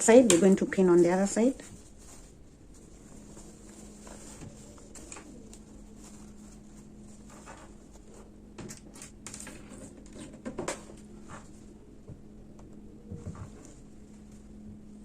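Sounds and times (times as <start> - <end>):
steady low hum: 0.0 - 15.0
fabric rustling: 0.8 - 8.4.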